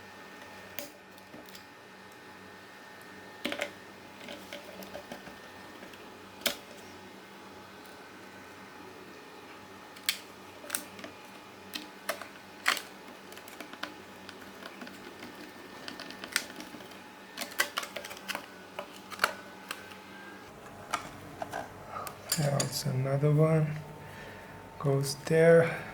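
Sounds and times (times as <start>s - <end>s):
faint steady hum: 0.0s - 25.9s
small parts clicking and tapping: 11.7s - 20.0s.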